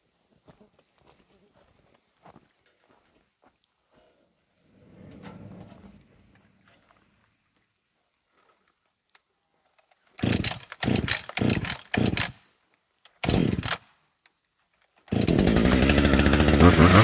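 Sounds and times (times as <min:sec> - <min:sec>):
chainsaw engine running: 0:10.2 - 0:12.4, 0:13.2 - 0:13.8, 0:15.1 - 0:17.0
chainsaw starter cord pulls: 0:10.2 - 0:12.4, 0:13.2 - 0:13.9, 0:15.0 - 0:17.0.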